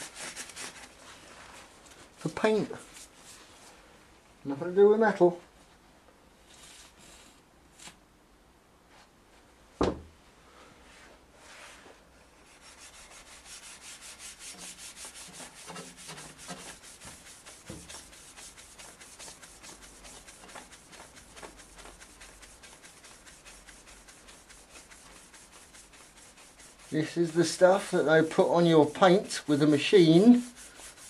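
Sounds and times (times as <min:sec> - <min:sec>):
cloth rubbing on metal: 0:00.0 - 0:03.8, 0:10.9 - 0:31.0.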